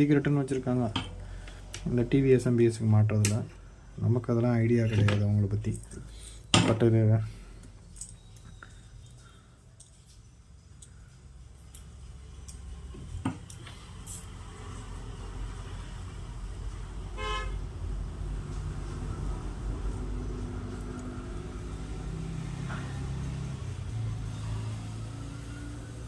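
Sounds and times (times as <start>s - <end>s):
traffic rumble: 0.0s - 26.0s
vehicle horn toot: 17.2s - 17.6s.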